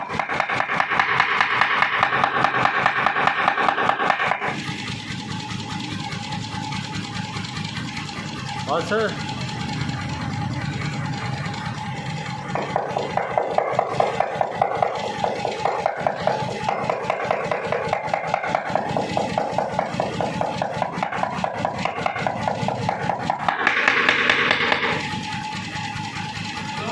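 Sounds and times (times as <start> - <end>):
power hammer blows: 0.0 - 4.8, 12.5 - 25.2
motor hum: 4.4 - 26.9.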